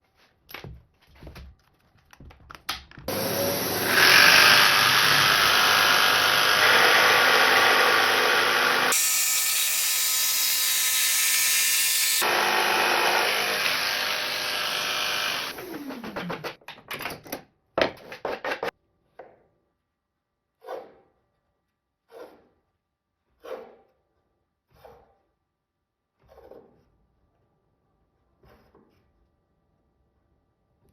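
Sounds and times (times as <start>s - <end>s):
power saw cutting wood: 3.1s - 16.4s.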